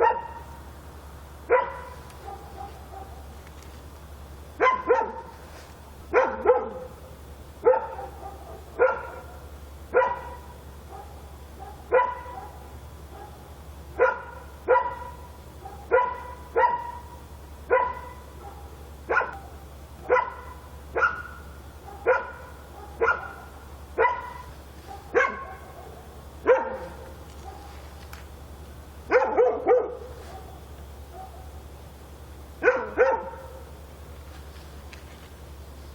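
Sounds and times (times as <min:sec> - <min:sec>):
dog barking: 0:00.0 - 0:00.6, 0:01.5 - 0:03.3, 0:04.6 - 0:05.4, 0:06.1 - 0:07.0, 0:07.6 - 0:27.8, 0:29.1 - 0:31.6, 0:32.6 - 0:33.8
steady low hum: 0:00.0 - 0:35.9.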